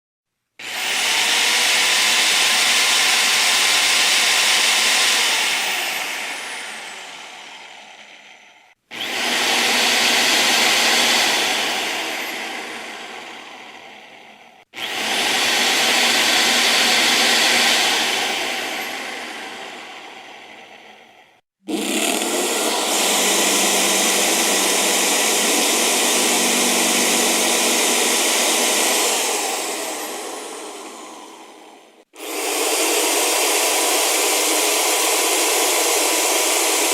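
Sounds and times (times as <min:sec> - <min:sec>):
electric drill motor: 0:00.6 - 0:36.9.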